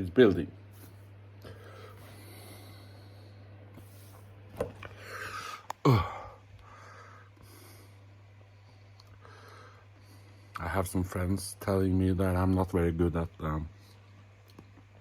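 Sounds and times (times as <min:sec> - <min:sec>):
steady low hum: 0:00.0 - 0:15.0
man breathing hard: 0:01.4 - 0:03.5, 0:04.9 - 0:08.0, 0:09.2 - 0:10.6.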